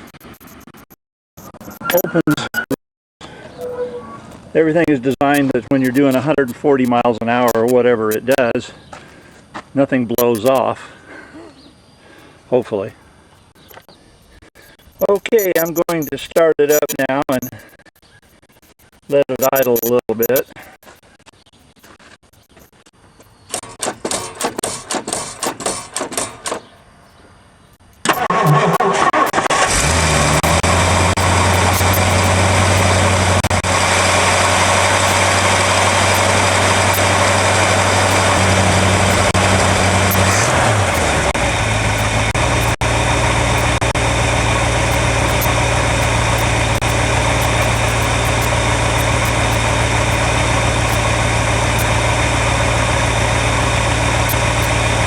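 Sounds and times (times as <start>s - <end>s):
starter motor cranking: 28.0s - 55.0s
car engine idling: 29.5s - 55.0s.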